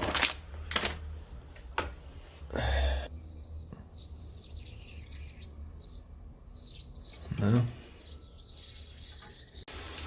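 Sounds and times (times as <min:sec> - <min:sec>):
toilet water hissing: 0:03.1 - 0:10.0.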